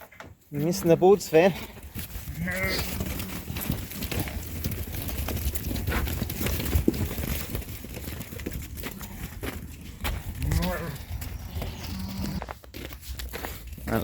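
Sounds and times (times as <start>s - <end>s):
hooves clattering on hard floor: 0.0s - 14.0s
sheep bleating: 1.5s - 3.5s, 10.4s - 12.5s.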